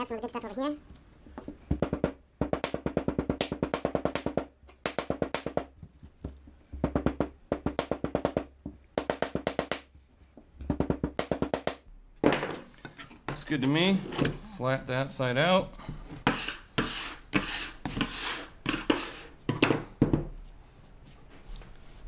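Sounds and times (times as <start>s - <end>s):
rapid hard tapping on sand: 1.8s - 5.7s.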